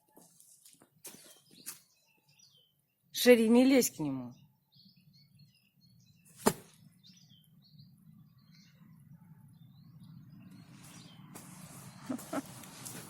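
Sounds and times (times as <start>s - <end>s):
small birds chirping: 0.0s - 13.0s
rustling noise: 10.7s - 13.0s.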